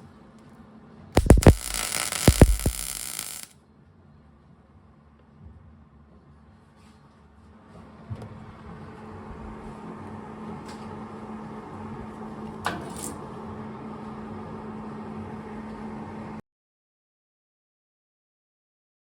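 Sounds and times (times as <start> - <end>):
mechanical hum with hiss: 0.0 - 16.4
sharp clicks: 1.2 - 3.5.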